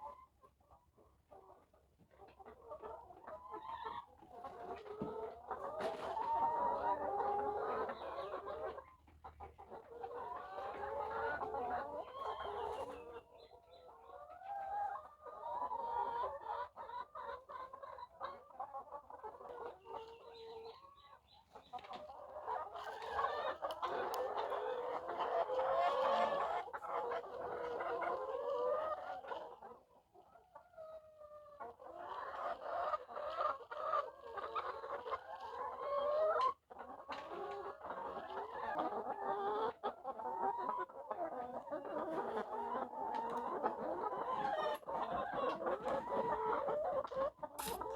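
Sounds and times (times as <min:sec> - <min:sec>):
hens clucking: 0:00.0 - 0:47.9.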